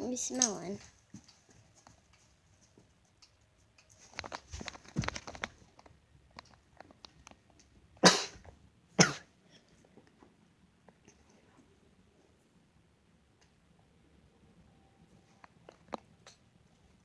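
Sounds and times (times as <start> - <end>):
soft clicks and rustling: 0.3 - 7.8
dog sneezing: 8.0 - 8.4, 9.0 - 9.3.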